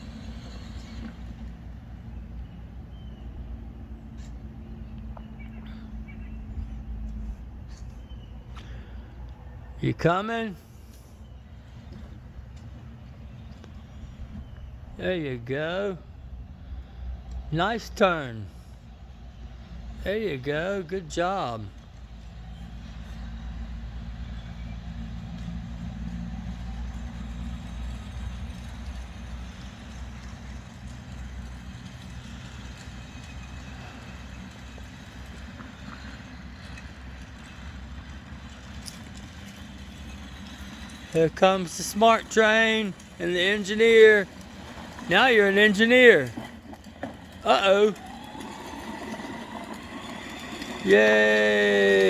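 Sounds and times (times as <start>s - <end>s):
motor hum: 0.0s - 8.0s, 32.2s - 52.0s
ride-on train rumbling: 0.0s - 52.0s.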